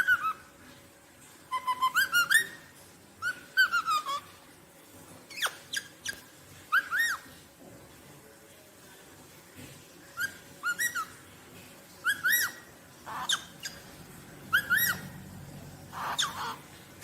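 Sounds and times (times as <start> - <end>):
parrot whistling: 1.5 - 2.6, 3.2 - 4.2, 5.3 - 7.3, 10.2 - 11.2, 12.0 - 13.8, 14.5 - 15.1, 15.9 - 16.6.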